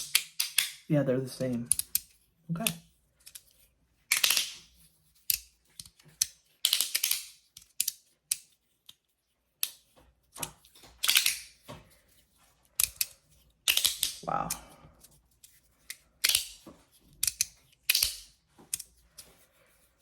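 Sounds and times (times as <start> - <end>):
magnets snapping with clicks: 0.0 - 0.9, 1.7 - 3.5, 4.1 - 4.7, 5.3 - 8.5, 9.6 - 9.8, 10.4 - 11.6, 12.8 - 14.6, 15.4 - 16.6, 17.2 - 18.9.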